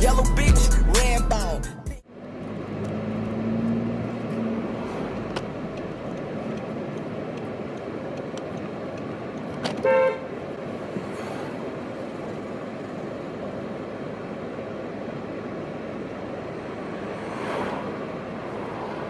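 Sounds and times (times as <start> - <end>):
street traffic: 0.0 - 19.0
car horn toot: 9.7 - 10.4.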